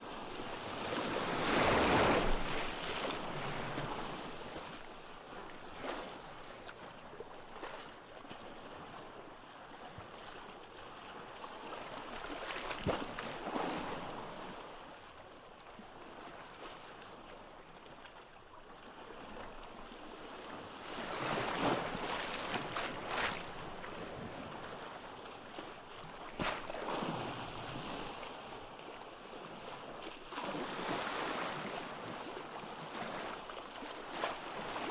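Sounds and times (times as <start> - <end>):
waves breaking on a beach: 0.1 - 8.9, 19.2 - 34.9.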